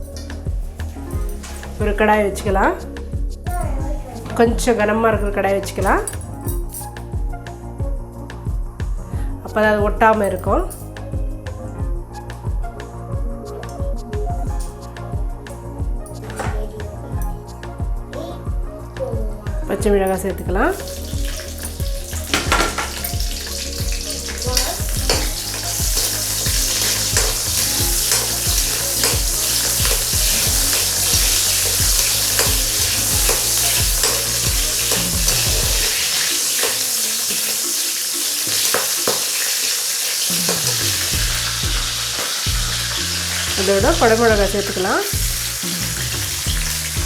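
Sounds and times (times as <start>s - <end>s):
chillies sizzling in oil: 20.7s - 47.0s.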